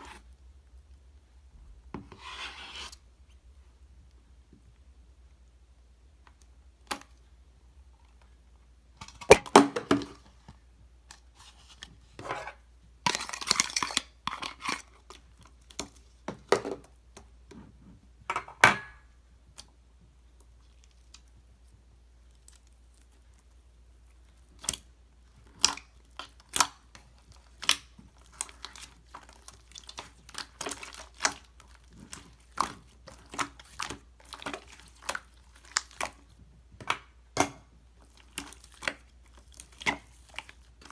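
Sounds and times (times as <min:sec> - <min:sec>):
slime sticky clicks and squishes: 0:24.2 - 0:36.3.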